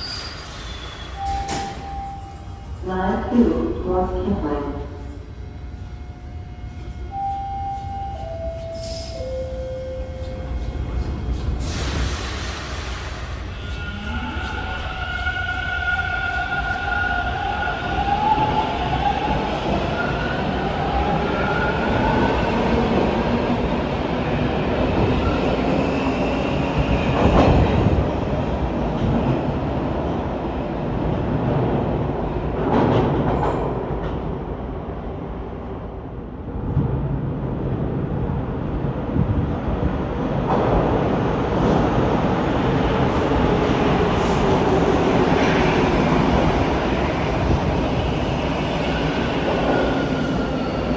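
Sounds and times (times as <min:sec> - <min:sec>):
subway train whine: 0:00.0 - 0:50.9
train clunks: 0:00.2 - 0:04.8.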